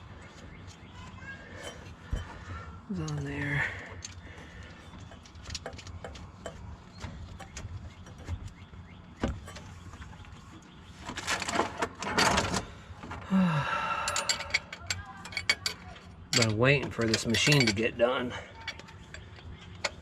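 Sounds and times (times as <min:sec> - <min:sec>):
hand tools clicking and knocking: 0:01.6 - 0:08.6, 0:13.9 - 0:20.0.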